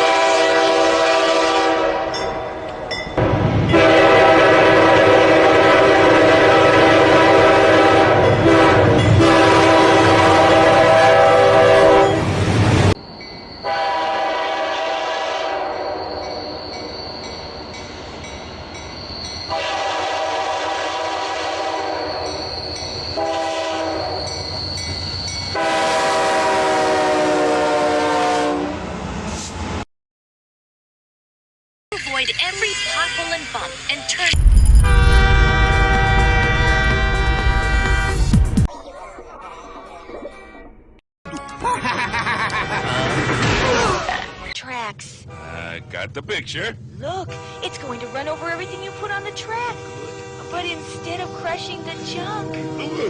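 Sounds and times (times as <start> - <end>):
train horn blasts: 0.0 - 2.6, 3.2 - 12.4, 13.6 - 16.6, 19.5 - 24.5, 25.5 - 28.9, 34.8 - 38.4, 47.3 - 53.0
low rumble: 34.3 - 41.0.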